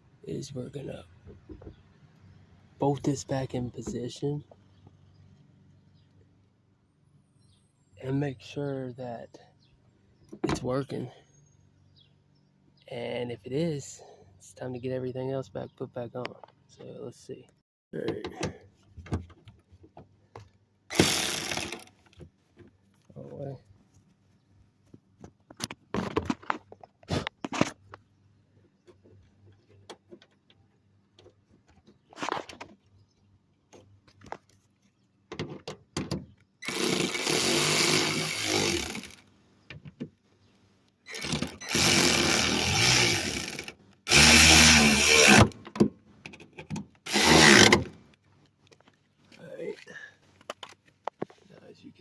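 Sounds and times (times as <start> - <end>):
power tool driving bolts: 20.9 - 22.0, 36.6 - 39.2, 41.1 - 45.9, 46.7 - 48.0.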